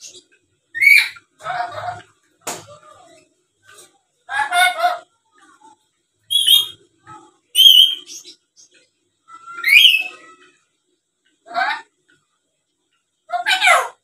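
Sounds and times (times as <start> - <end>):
high-pitched bird calls: 0.0 - 2.0, 6.3 - 6.8, 7.6 - 8.4, 9.3 - 10.6
parrot squawk: 0.8 - 2.1, 4.3 - 5.1, 9.4 - 10.4, 11.5 - 11.9, 13.3 - 14.0.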